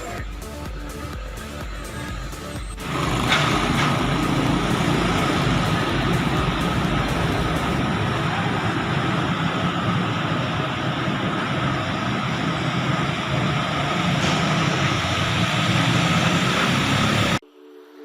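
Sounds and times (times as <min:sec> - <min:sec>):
road traffic noise: 0:00.0 - 0:17.6.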